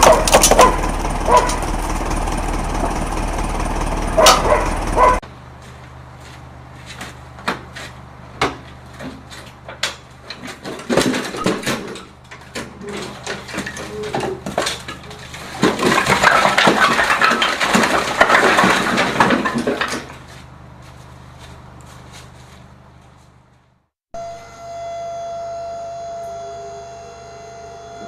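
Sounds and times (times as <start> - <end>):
dense clattering rattle: 0.0 - 5.2, 10.2 - 20.3.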